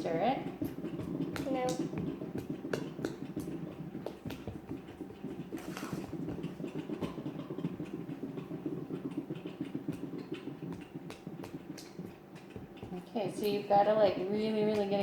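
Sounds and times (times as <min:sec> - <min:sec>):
spoon stirring batter in bowl: 0:00.0 - 0:15.0.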